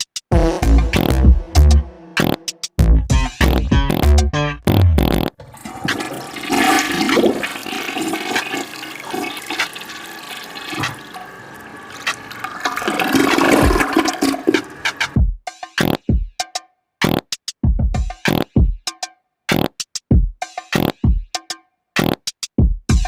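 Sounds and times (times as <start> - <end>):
low-pitched farts: 0.3 - 2.4, 4.7 - 5.4
toilet flushing: 5.4 - 15.2.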